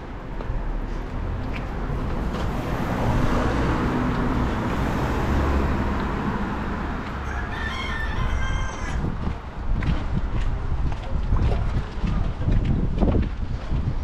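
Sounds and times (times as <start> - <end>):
low vehicle drone: 0.0 - 7.4
street rumble: 0.0 - 14.0.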